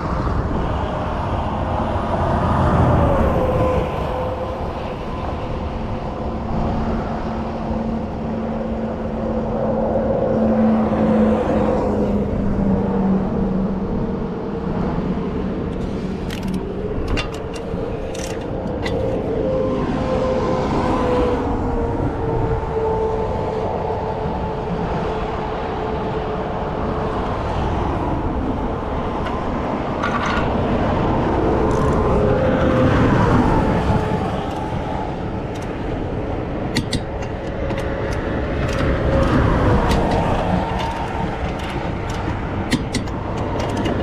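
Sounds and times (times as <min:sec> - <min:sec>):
highway traffic passing: 0:10.3 - 0:22.8, 0:25.3 - 0:44.0
sharp clicks: 0:15.8 - 0:19.3, 0:35.5 - 0:36.0, 0:36.7 - 0:44.0.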